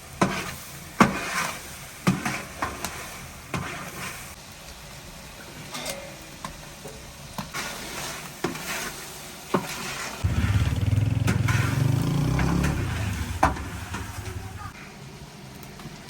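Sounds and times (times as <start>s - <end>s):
meat sizzling in a pot: 0.0s - 10.2s.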